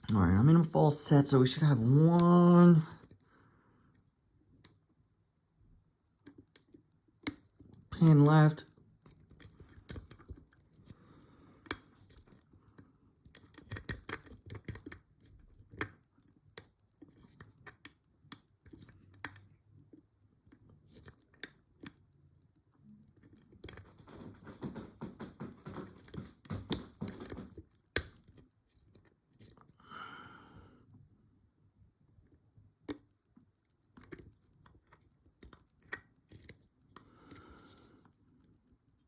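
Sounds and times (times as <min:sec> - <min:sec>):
lock pick clicking and scraping: 0:09.0 - 0:11.0, 0:11.6 - 0:19.6, 0:20.4 - 0:22.2, 0:23.0 - 0:29.8, 0:32.9 - 0:39.0.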